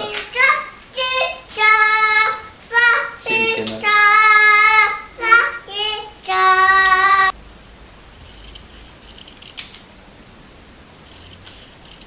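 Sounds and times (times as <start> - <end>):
child singing long notes: 0.0 - 7.4.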